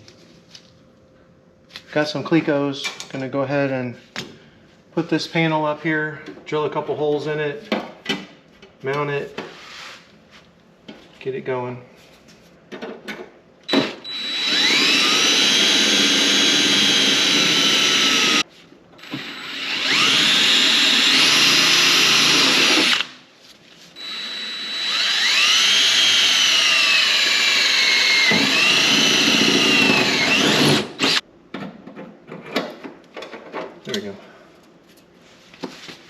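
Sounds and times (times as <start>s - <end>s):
electric drill boring metal: 13.7s - 18.4s, 19.0s - 23.2s, 24.0s - 31.2s.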